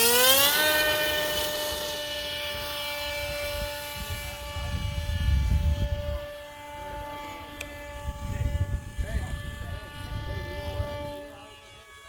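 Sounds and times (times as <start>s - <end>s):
electric model plane motor whining: 0.0s - 12.0s
wind rumbling on microphone: 3.0s - 11.4s.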